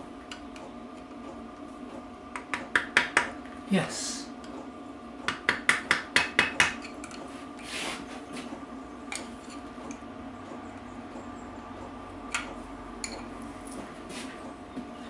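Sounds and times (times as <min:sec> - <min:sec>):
hammer tapping metal: 0:02.3 - 0:03.4, 0:05.3 - 0:07.2.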